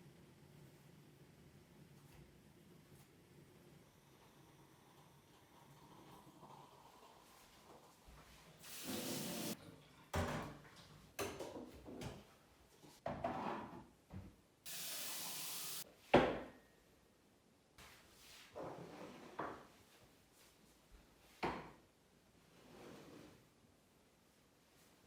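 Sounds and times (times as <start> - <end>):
steady hiss: 8.6 - 9.6, 14.7 - 15.8.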